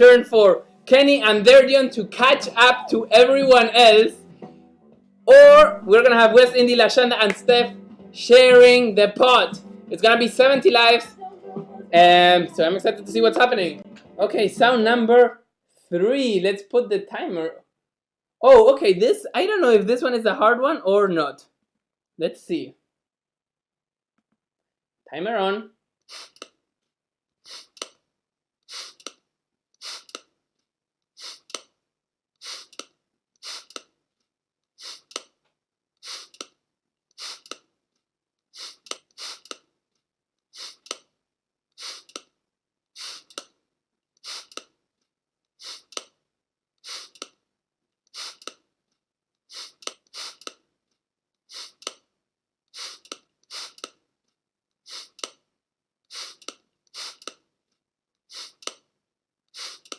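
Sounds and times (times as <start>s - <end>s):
spray bottle hissing: 26.1s - 26.4s, 28.7s - 29.0s, 29.8s - 30.2s, 31.2s - 31.5s, 32.4s - 32.8s, 33.4s - 33.8s, 34.8s - 35.1s, 36.0s - 36.4s, 37.2s - 37.5s, 38.6s - 39.5s, 40.6s - 40.9s, 41.8s - 42.1s, 43.0s - 43.4s, 44.2s - 44.6s, 45.6s - 45.9s, 46.8s - 47.2s, 48.2s - 48.5s, 49.5s - 50.5s, 51.5s - 51.9s, 52.8s - 53.8s, 54.9s - 55.2s, 56.1s - 56.4s, 57.0s - 57.3s, 58.3s - 58.7s, 59.6s - 59.9s.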